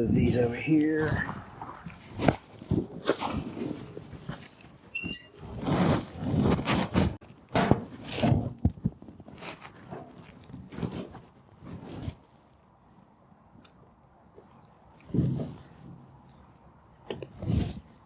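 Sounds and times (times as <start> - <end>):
rustling: 7.9 - 12.6.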